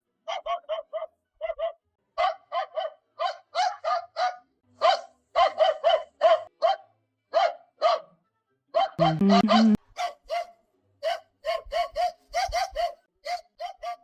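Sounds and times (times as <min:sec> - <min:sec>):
cartoon dog barking: 0:08.8 - 0:14.0.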